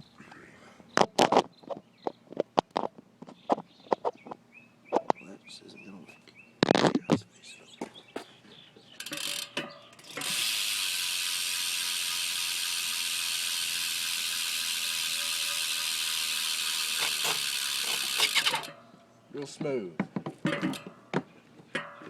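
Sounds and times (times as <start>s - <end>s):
bike hub ratchet buzzing: 9.0s - 18.8s.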